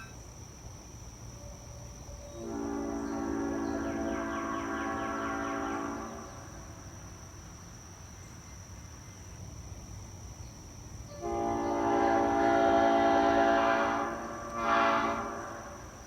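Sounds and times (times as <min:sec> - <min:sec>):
air horn chord: 0:02.4 - 0:06.4, 0:11.1 - 0:15.9.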